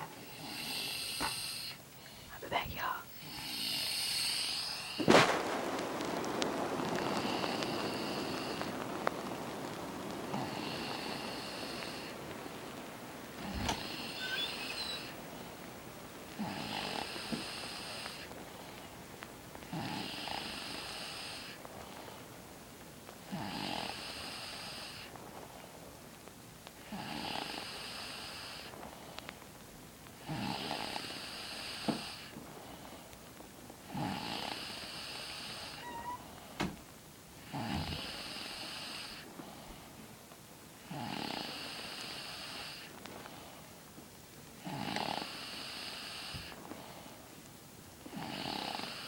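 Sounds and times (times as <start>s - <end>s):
person snoring: 0.0s - 1.8s, 2.8s - 5.1s
quiet breathing: 0.0s - 5.1s, 6.8s - 22.5s, 23.2s - 29.6s, 30.2s - 40.2s, 40.9s - 43.9s, 44.8s - 47.4s.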